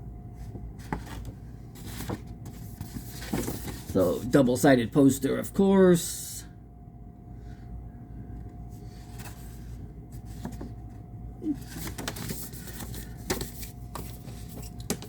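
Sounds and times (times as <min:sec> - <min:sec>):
faint steady hum: 0:00.0 - 0:15.0
paper and cardboard rustling: 0:00.5 - 0:04.4, 0:08.8 - 0:15.0.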